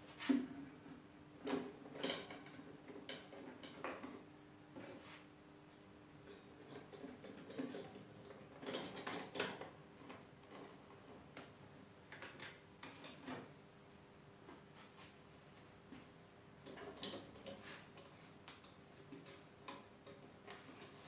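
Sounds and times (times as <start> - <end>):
faint steady hum: 0.0 - 21.0
faint clicks and knocks: 15.9 - 21.0.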